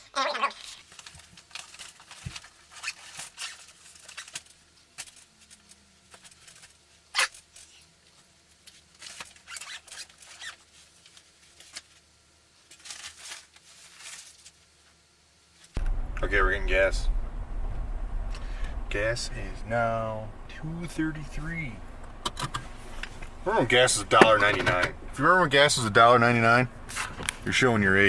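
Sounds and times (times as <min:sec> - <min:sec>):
faint rustling: 0:15.6 - 0:28.0.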